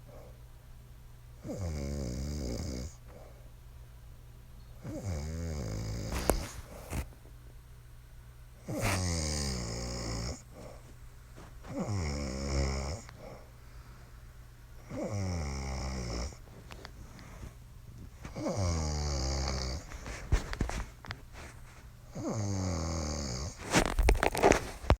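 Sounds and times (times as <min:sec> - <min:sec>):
woman snoring: 0:01.4 - 0:03.0, 0:04.9 - 0:06.6, 0:08.7 - 0:10.4, 0:11.7 - 0:13.4, 0:14.9 - 0:16.4, 0:18.3 - 0:19.9, 0:22.1 - 0:23.6.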